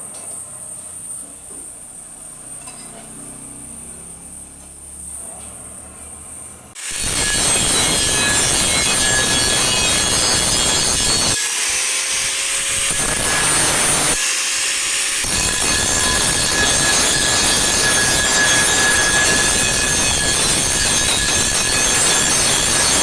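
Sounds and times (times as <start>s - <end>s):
power tool grinding on metal: 6.7s - 23.0s.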